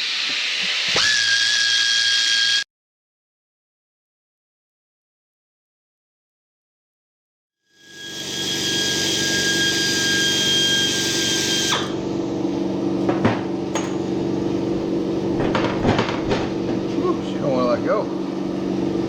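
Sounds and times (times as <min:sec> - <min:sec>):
low machine hum: 0:11.9 - 0:19.0.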